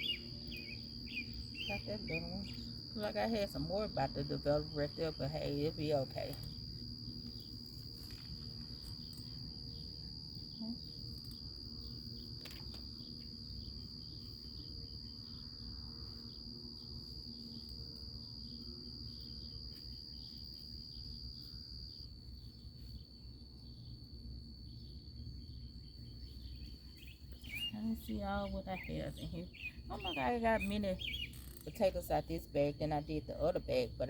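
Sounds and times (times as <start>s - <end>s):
crickets trilling: 0.0s - 34.0s.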